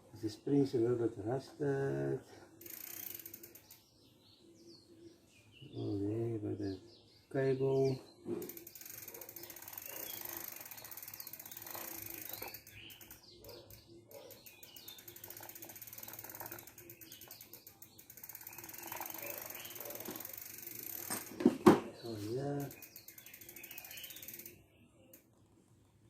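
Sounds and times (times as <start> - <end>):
bicycle freewheel ratcheting: 2.5 - 3.9, 8.4 - 21.4, 22.4 - 25.2.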